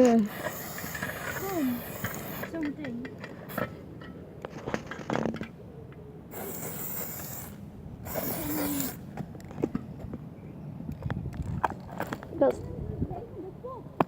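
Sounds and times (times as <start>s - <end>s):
spray paint can hissing: 0.3s - 2.6s, 6.3s - 9.0s.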